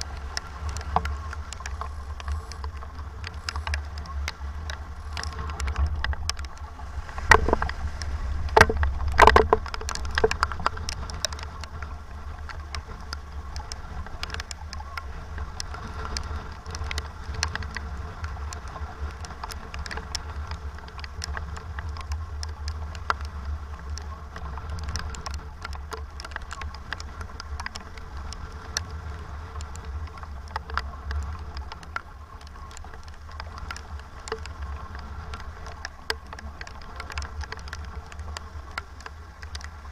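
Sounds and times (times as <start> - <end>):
sharp ticks: 0.0 - 39.9
wind buffeting microphone: 0.0 - 39.9.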